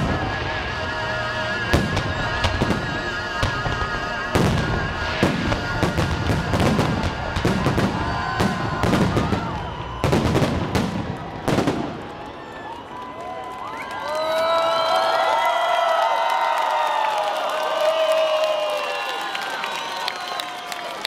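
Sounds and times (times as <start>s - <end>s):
fireworks bangs and crackles: 0.0s - 12.5s
whistling fireworks: 0.0s - 14.9s, 17.9s - 21.0s.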